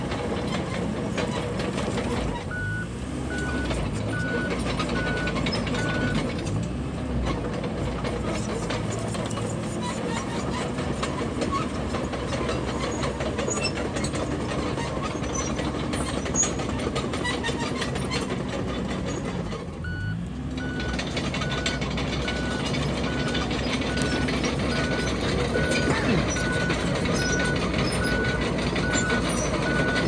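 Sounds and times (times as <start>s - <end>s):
bulldozer engine under load: 0.0s - 30.0s
reversing alarm beeping: 2.5s - 6.2s, 19.8s - 30.0s
steel tracks clanking: 20.8s - 30.0s.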